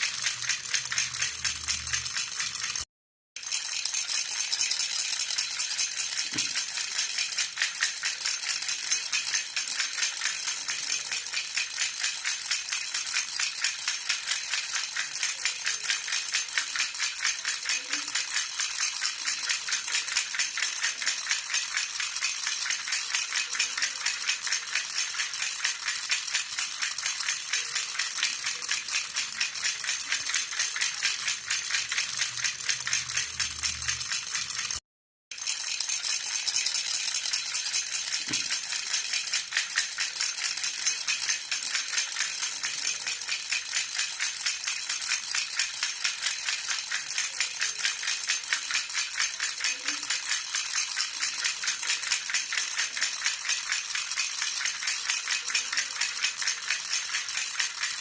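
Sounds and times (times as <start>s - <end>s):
baby rattle shaken rapidly: 0.0s - 58.0s.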